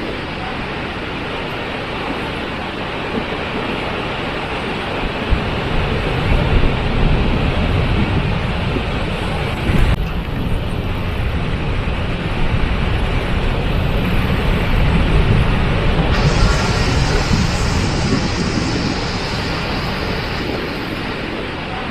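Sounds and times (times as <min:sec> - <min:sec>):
waterfall rushing: 0:16.1 - 0:21.9.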